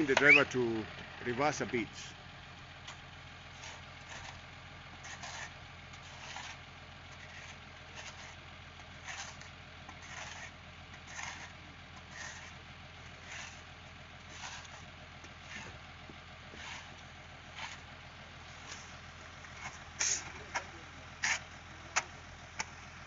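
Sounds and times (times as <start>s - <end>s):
truck engine idling: 0.0s - 23.0s
short scraping sounds: 5.0s - 6.6s, 9.0s - 12.6s, 14.3s - 14.8s, 16.6s - 17.9s, 19.6s - 20.5s.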